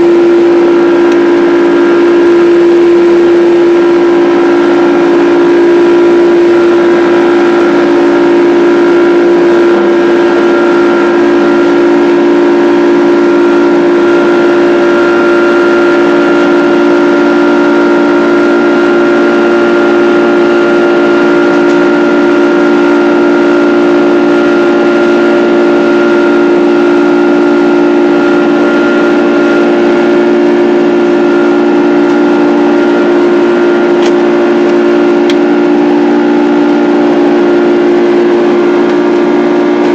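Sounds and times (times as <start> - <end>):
jet engines droning in cabin: 0.0 - 39.9.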